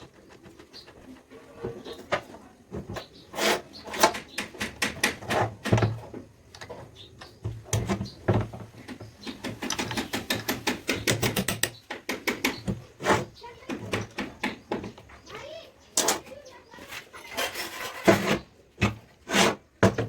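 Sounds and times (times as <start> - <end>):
metal clicks and knocks: 7.7 - 12.8.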